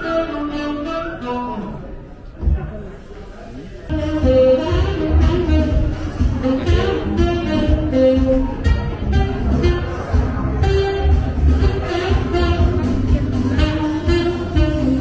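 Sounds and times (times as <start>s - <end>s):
music with a steady beat: 3.9s - 15.0s.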